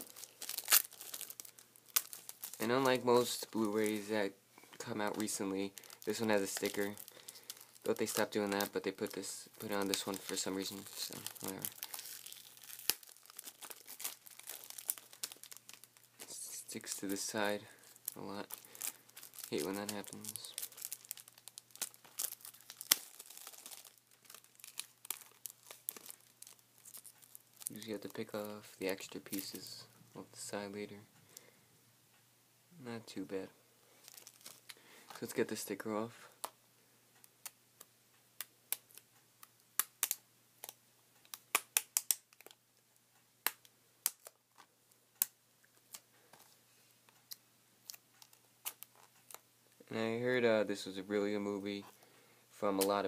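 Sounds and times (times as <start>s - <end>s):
plastic wrapping crinkling and tearing: 0.0s - 4.2s, 4.8s - 29.7s, 34.0s - 35.4s, 39.8s - 42.6s, 47.2s - 49.4s
plastic wrap sharp snap: 18.0s - 28.1s, 38.4s - 42.6s, 43.4s - 46.0s.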